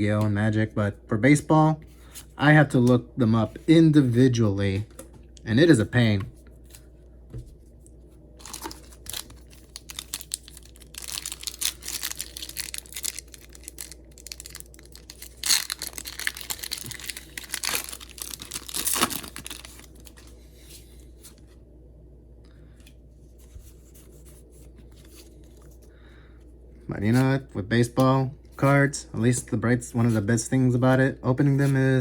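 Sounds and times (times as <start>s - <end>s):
foil wrapper tearing and crinkling: 8.4s - 20.2s.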